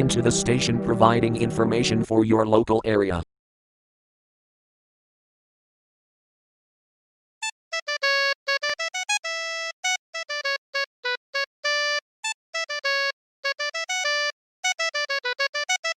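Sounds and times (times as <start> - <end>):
synthesizer melody of clipped notes: 0.0 - 2.0.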